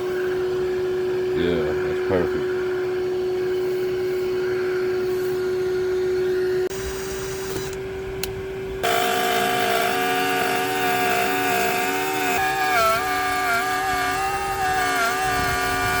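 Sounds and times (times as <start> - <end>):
shop vacuum running: 0.0 - 16.0
router whine cutting wood: 6.7 - 7.8, 8.8 - 16.0.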